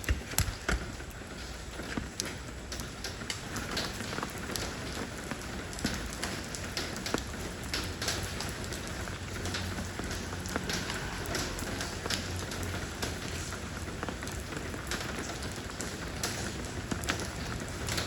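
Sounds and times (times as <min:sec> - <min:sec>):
rain falling on stone: 0:00.0 - 0:18.0.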